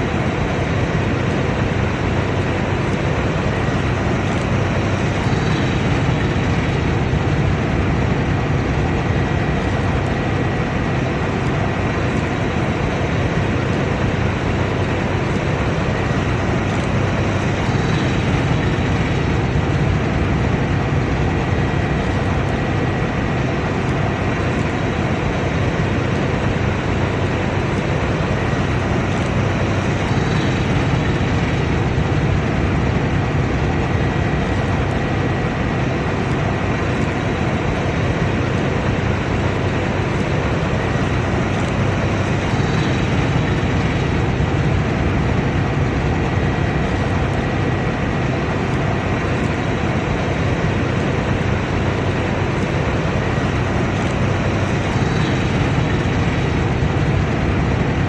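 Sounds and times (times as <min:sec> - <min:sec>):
combine harvester drone: 0:00.0 - 0:58.0.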